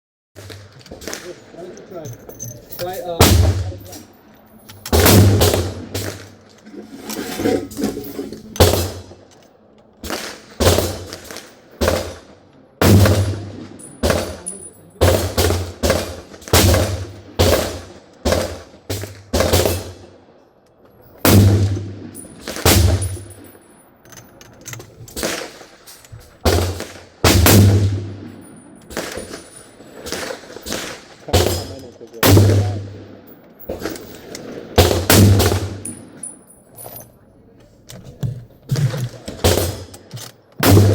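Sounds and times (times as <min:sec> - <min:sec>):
gunshots with echoes: 0:03.1 - 0:04.1, 0:04.9 - 0:06.4, 0:08.6 - 0:09.2, 0:10.0 - 0:20.2, 0:21.2 - 0:23.5, 0:26.4 - 0:34.0, 0:34.6 - 0:36.3, 0:38.8 - 0:39.9, 0:40.6 - 0:40.9.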